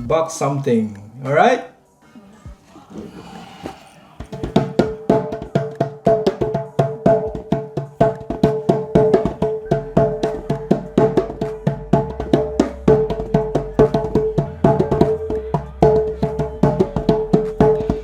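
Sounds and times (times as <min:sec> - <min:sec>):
fast wood-block percussion: 0:04.2 - 0:18.0.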